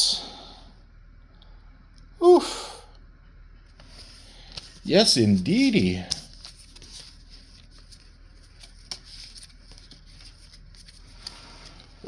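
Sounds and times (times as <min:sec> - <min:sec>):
trading cards rustling: 0:03.8 - 0:12.0.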